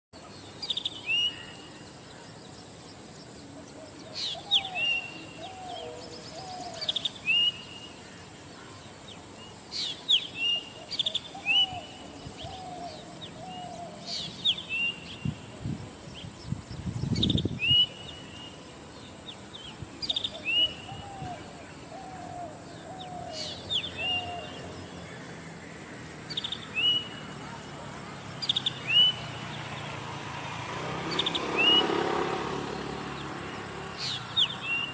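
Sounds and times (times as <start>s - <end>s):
high zit bird call: 31.1s - 34.9s.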